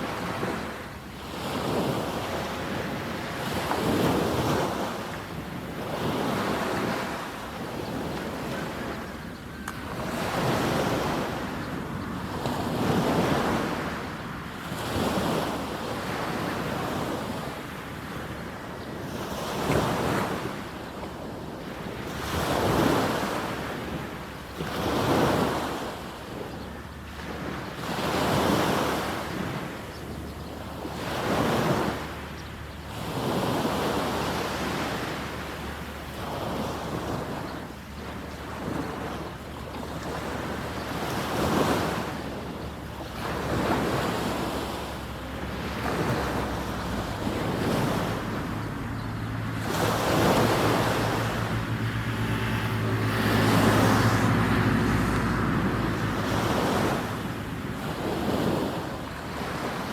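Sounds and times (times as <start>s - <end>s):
waves washing up a beach: 0.0s - 59.9s
wind on microphone: 33.0s - 59.9s.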